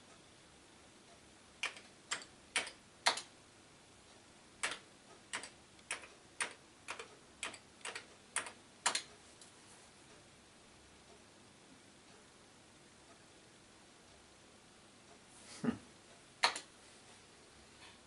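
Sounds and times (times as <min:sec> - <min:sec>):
keyboard key clicks: 0:16.4 - 0:16.7.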